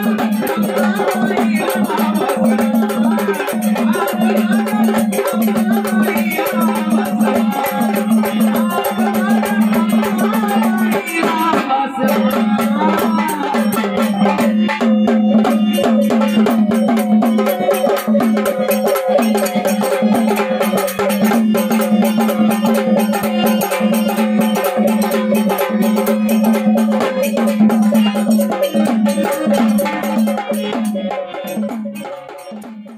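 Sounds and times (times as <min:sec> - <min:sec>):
hand percussion and rattles: 0:00.0 - 0:32.9.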